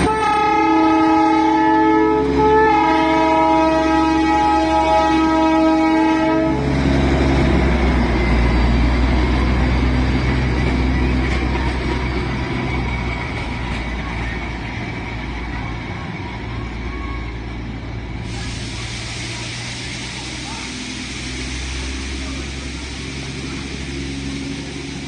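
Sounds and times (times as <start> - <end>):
train horn: 0.0 - 6.9
train rumbling: 0.0 - 25.0.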